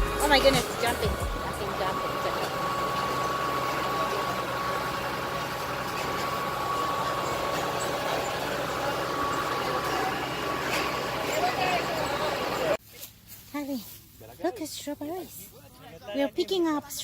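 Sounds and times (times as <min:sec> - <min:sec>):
thin steady whine: 0:00.0 - 0:12.8
vehicle engine running: 0:00.0 - 0:17.0.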